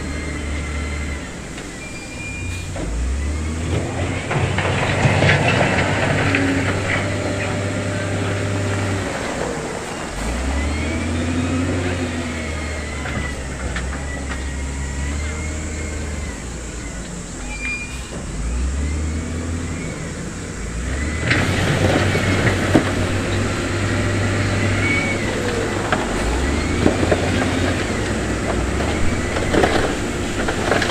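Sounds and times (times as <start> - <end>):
diesel construction machinery running: 0.0 - 30.9.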